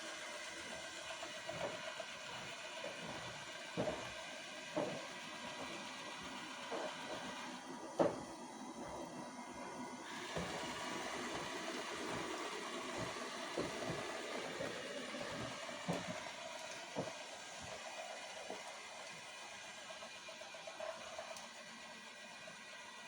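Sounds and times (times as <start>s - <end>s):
robot vacuum whirring: 10.0s - 22.6s.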